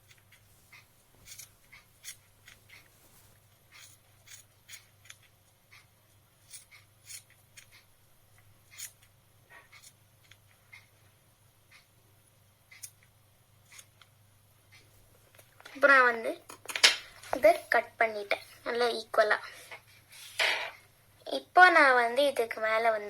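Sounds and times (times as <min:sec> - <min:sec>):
scissors snipping yarn: 0:01.2 - 0:02.9.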